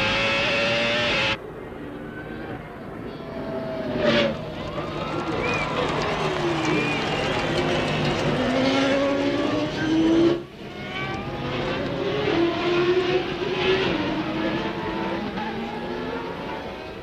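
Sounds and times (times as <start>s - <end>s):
race car engines shifting gears: 3.8s - 17.0s.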